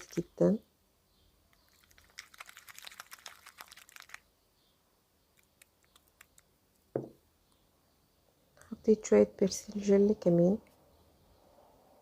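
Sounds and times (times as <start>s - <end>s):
sticky slime being stirred: 1.6s - 4.2s.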